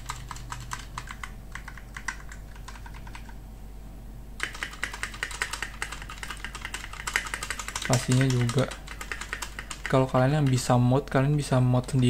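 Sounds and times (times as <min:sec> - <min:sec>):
keyboard key clicking with rattle: 0:00.0 - 0:03.4, 0:04.4 - 0:11.2
mechanical keyboard key presses: 0:00.0 - 0:03.4, 0:04.4 - 0:10.7.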